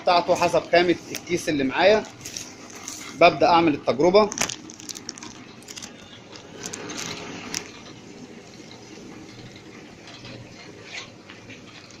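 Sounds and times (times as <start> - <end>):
plastic bag rustling and clicking: 4.2 - 7.8.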